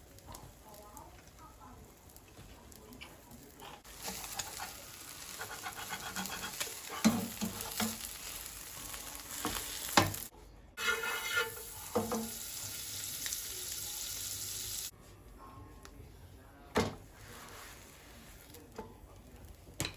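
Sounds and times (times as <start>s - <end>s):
food sizzling in frying pan: 0.0s - 14.9s
utensil scraping pan: 3.7s - 8.1s, 10.8s - 12.3s.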